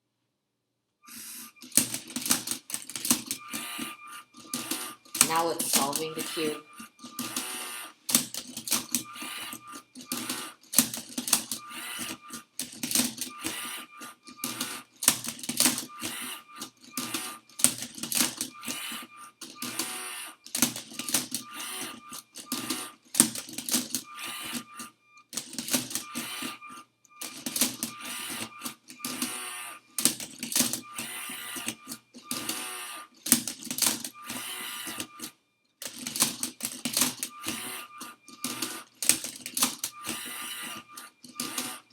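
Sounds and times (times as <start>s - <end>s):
robot motors clicking and clacking: 1.1s - 41.9s
faint motor whine: 39.8s - 41.9s.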